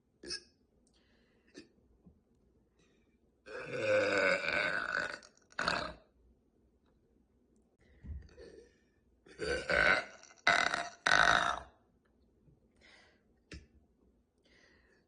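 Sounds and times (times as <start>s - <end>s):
woman burping: 0.2s - 0.5s, 3.5s - 6.0s, 9.3s - 11.7s.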